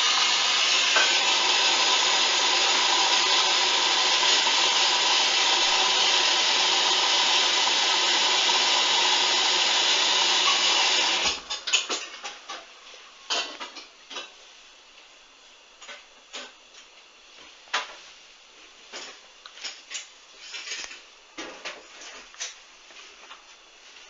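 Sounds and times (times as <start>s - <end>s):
washing machine rushing: 0.0s - 11.5s.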